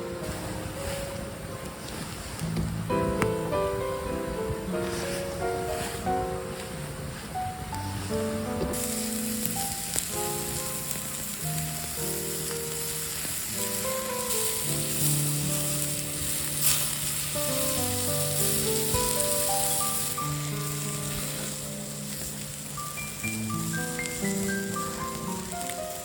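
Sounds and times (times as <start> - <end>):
background piano music: 0.0 - 26.0
meat sizzling over a fire: 0.0 - 26.0
sharp pops: 7.6 - 26.0.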